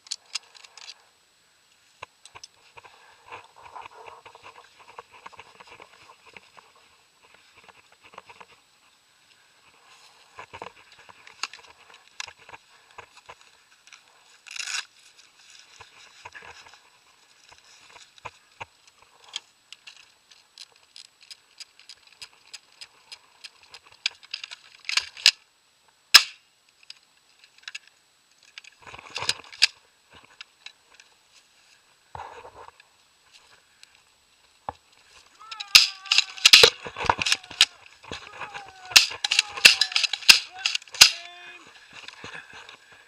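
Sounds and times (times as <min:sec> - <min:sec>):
airsoft guns firing: 0:35.6 - 0:37.7, 0:38.9 - 0:41.3.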